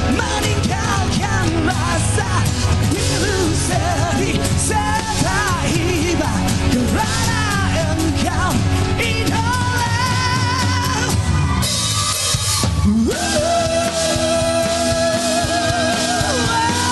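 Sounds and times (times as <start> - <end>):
rock band playing live: 0.0 - 16.9.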